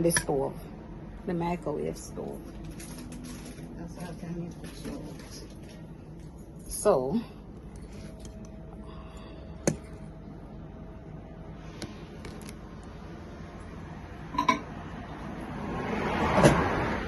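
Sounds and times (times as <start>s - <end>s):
dish clinking: 14.3s - 14.7s.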